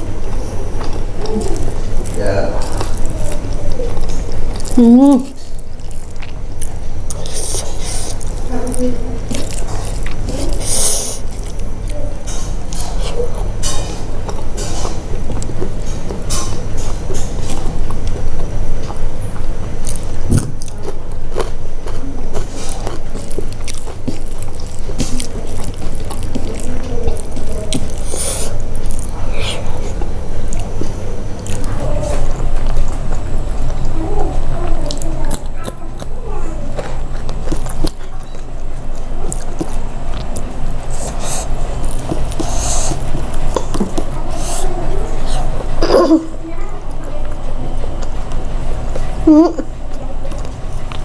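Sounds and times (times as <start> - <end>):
chewing and biting: 0.0 - 51.0
steady low hum: 0.0 - 51.0
wet mouth clicks: 0.8 - 8.5, 22.6 - 36.1, 36.7 - 46.2.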